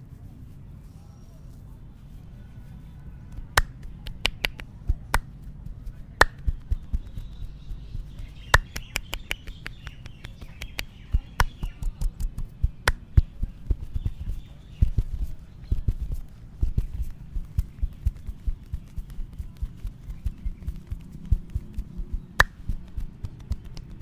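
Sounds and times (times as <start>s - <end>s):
dull low pats: 2.6s - 24.0s
finger snapping clicks: 3.6s - 5.3s, 8.5s - 13.0s, 22.4s - 22.6s.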